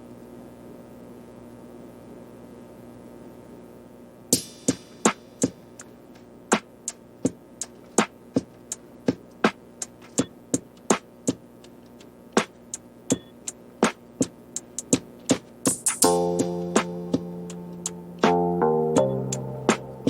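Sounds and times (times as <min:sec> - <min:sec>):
drum machine clicks: 0:04.3 - 0:20.0.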